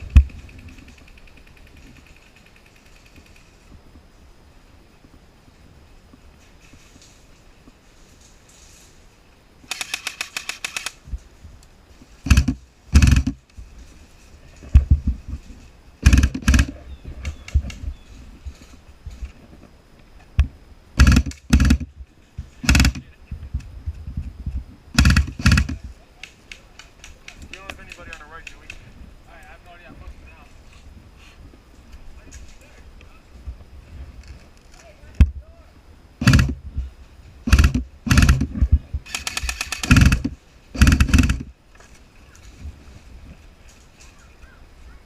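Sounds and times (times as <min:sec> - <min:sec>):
airsoft gun automatic bursts: 0:09.7 - 0:11.0, 0:12.2 - 0:13.4, 0:16.0 - 0:16.8, 0:21.0 - 0:21.9, 0:22.6 - 0:23.1, 0:25.0 - 0:25.8, 0:36.2 - 0:36.6, 0:37.4 - 0:41.5
sharp click: 0:09.7 - 0:11.0.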